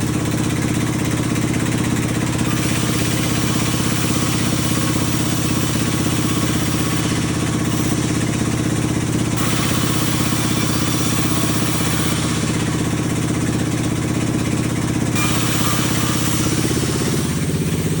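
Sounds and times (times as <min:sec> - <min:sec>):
sawmill engine running: 0:00.0 - 0:18.0
hiss: 0:02.4 - 0:13.8, 0:15.2 - 0:18.0.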